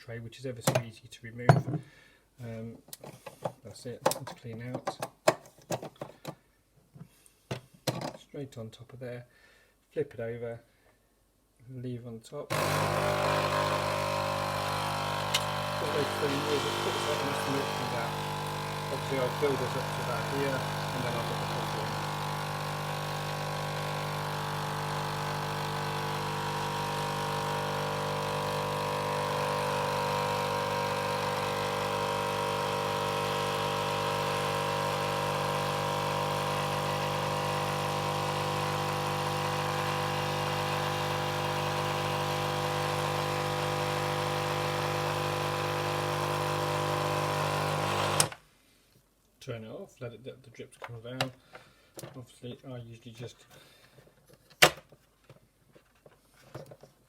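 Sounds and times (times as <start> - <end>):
coffee machine pump humming: 12.5 - 48.4.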